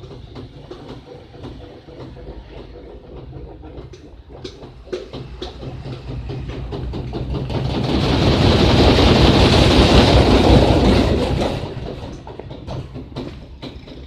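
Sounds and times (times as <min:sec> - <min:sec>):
washing machine churning: 0:00.0 - 0:14.0.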